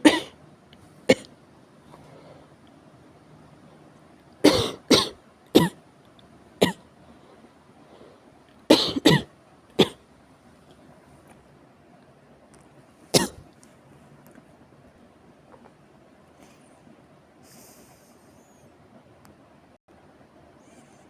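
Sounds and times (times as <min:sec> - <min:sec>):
person coughing: 0:00.0 - 0:00.4, 0:04.4 - 0:05.8, 0:08.7 - 0:10.0, 0:13.2 - 0:13.4.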